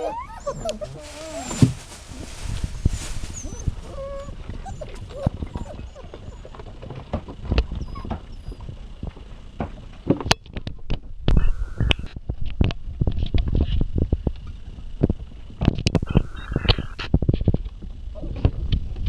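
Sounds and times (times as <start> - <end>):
dog whimpering: 0.0 - 8.8.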